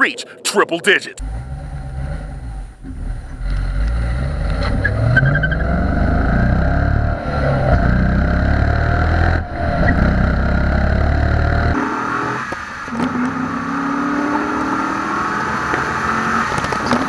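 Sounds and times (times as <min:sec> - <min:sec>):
car engine at full throttle: 0:01.2 - 0:17.0.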